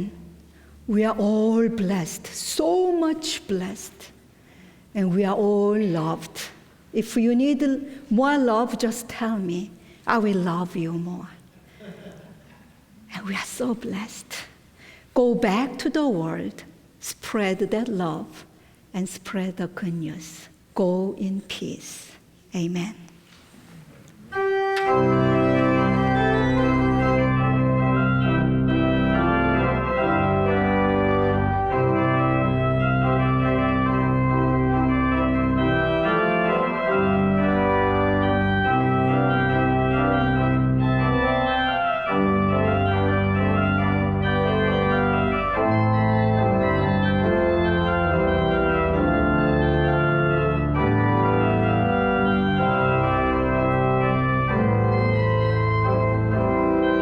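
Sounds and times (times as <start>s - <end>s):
organ playing held chords: 24.3s - 57.0s.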